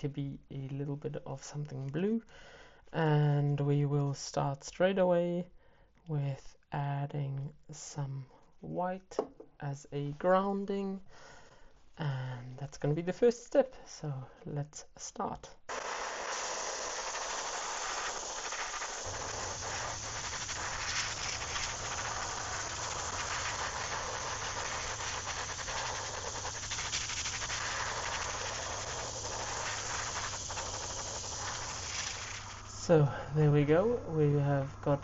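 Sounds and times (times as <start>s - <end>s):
airbrush spraying air hiss: 15.7s - 35.0s.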